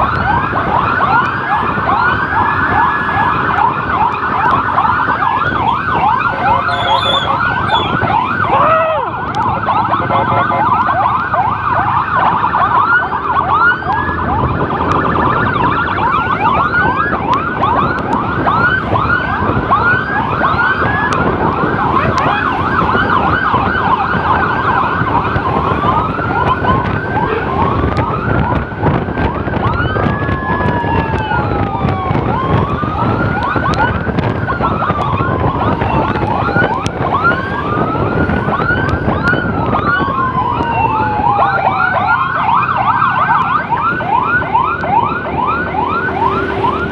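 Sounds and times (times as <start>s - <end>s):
ambulance siren yelping and wailing: 0.0s - 46.9s
road and engine noise: 0.0s - 46.9s
second siren sweeping: 0.0s - 46.9s.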